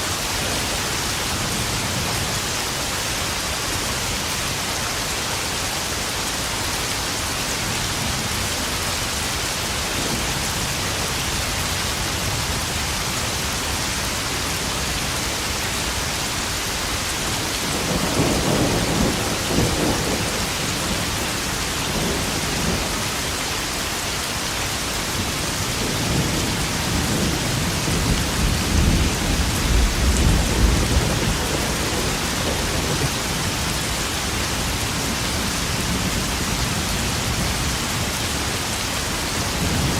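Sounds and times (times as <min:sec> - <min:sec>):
heavy rain on puddles: 0:00.0 - 0:39.9
thunder rumbling: 0:17.7 - 0:22.9, 0:25.7 - 0:37.6.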